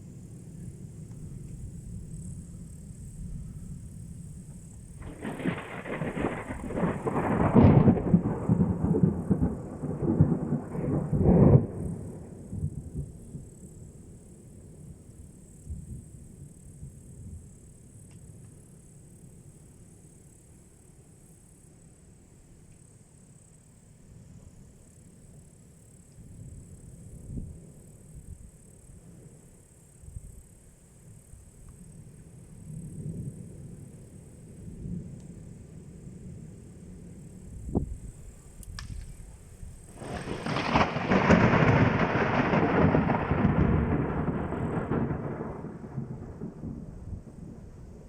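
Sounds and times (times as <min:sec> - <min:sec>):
thunder rumble: 0:00.0 - 0:13.6, 0:32.6 - 0:48.0
crickets chirring: 0:00.0 - 0:48.0
thunder crack: 0:05.0 - 0:12.3, 0:39.9 - 0:47.8.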